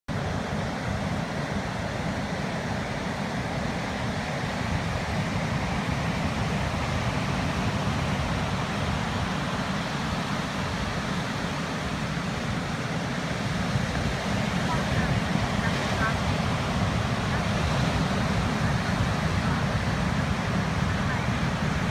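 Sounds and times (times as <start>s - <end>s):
strong wind buffeting microphone: 0.1s - 21.9s
storm surf rushing: 0.2s - 21.9s.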